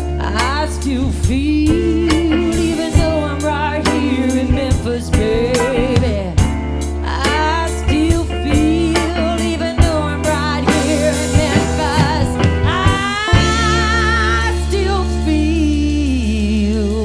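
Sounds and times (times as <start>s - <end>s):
drum kit steady beat: 0.0s - 15.3s
blues-rock band playing: 0.0s - 16.1s
bending lead melody: 0.0s - 16.6s.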